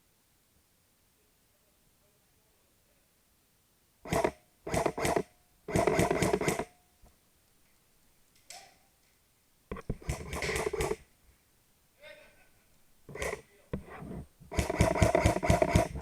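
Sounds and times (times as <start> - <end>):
airsoft gun firing bursts: 4.1 - 6.7, 9.9 - 11.0, 13.1 - 13.4, 14.5 - 16.0.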